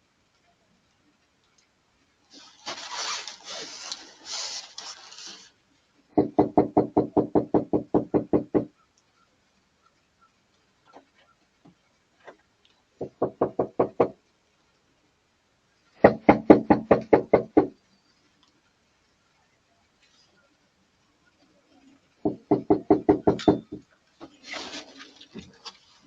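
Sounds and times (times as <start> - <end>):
rustling scraping noise: 2.3 - 5.6, 24.2 - 26.0
rapid knocking on door: 6.2 - 8.7, 13.0 - 14.2, 16.0 - 17.7, 22.3 - 23.8.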